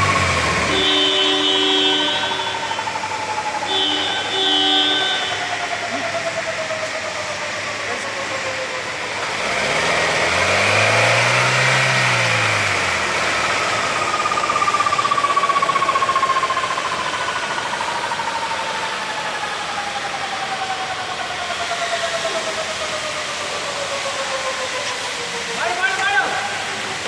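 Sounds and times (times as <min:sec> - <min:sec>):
gear whine: 0:00.0 - 0:25.4
road noise: 0:00.0 - 0:27.0
low drone: 0:10.9 - 0:25.6.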